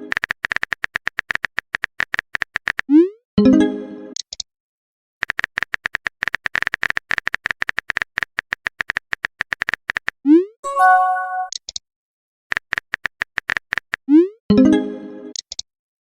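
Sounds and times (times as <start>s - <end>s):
phone keyboard typing clicks: 0.1s - 2.9s, 5.2s - 10.2s, 12.5s - 14.0s
chime of steady tones: 10.7s - 11.5s.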